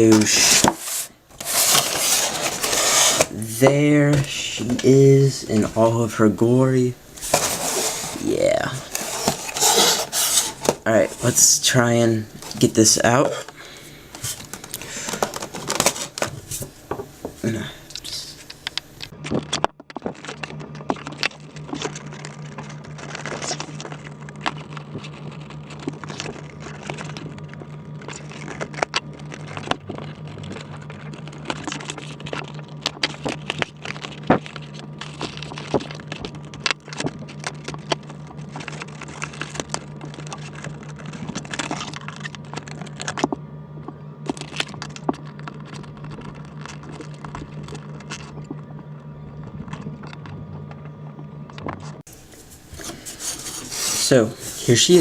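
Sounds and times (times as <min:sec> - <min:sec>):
plastic packaging crinkling: 0:00.0 - 0:06.2, 0:12.2 - 0:43.3
steady low hum: 0:00.0 - 0:55.0.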